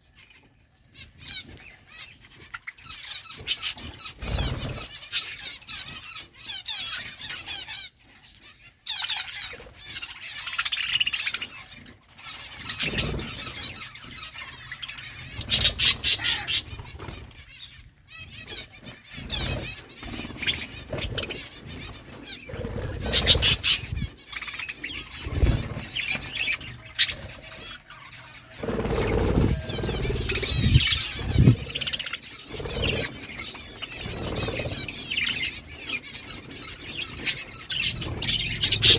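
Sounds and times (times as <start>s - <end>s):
budgerigars chirping: 1.2s - 38.9s
wing flapping and rustling: 3.3s - 6.2s, 12.3s - 38.9s.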